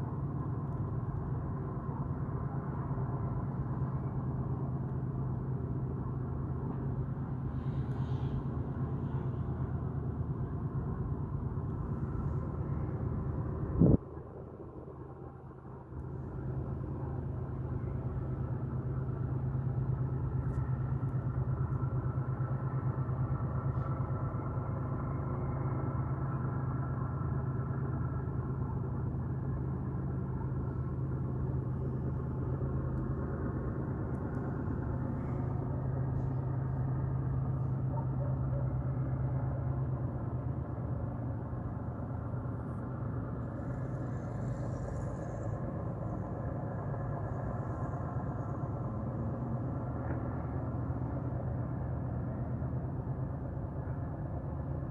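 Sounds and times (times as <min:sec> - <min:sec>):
low droning hum: 0:00.0 - 0:54.9.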